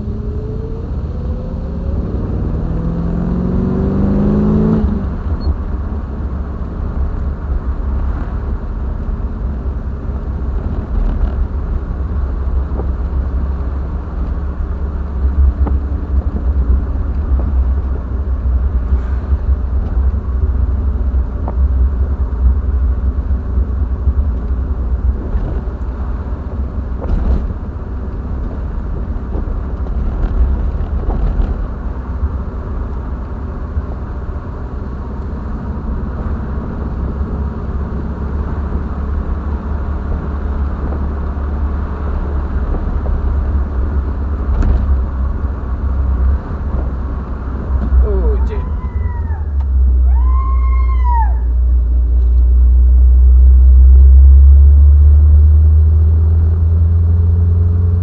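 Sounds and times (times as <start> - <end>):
car engine accelerating: 0.0 - 58.0
road noise: 0.0 - 58.0.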